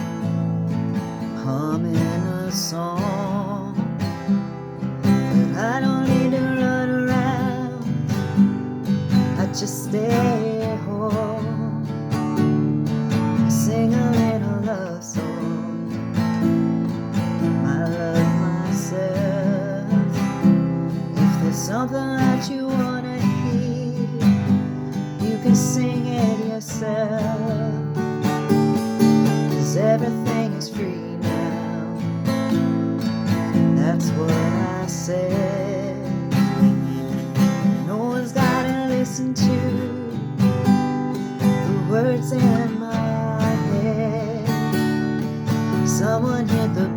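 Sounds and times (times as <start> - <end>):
acoustic guitar strumming chords: 0.0 - 46.9
person singing wordless melody: 13.6 - 15.8, 25.2 - 28.0, 29.4 - 32.0, 33.8 - 36.3, 37.8 - 40.4.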